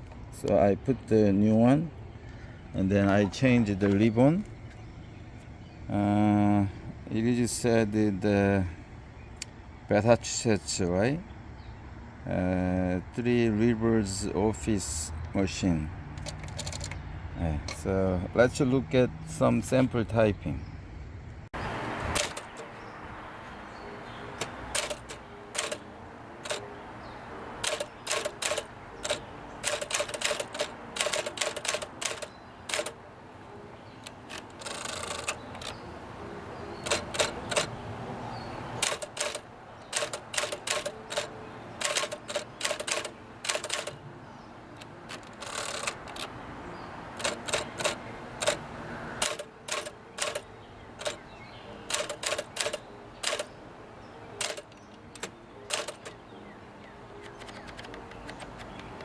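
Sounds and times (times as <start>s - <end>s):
manual typewriter key strikes: 16.2s - 17.0s, 22.1s - 22.8s, 24.3s - 26.7s, 27.6s - 33.0s, 34.0s - 35.8s, 36.8s - 37.8s, 38.8s - 44.0s, 44.8s - 46.4s, 47.1s - 53.5s, 54.3s - 56.2s, 57.2s - 59.0s
typewriter rattling burst: 22.1s - 22.7s, 24.4s - 25.8s, 26.4s - 26.7s, 27.6s - 33.0s, 34.0s - 35.8s, 36.8s - 37.7s, 38.8s - 44.0s, 45.0s - 46.3s, 47.1s - 48.6s, 49.2s - 51.2s, 51.9s - 53.5s, 54.4s - 56.2s, 57.2s - 59.0s.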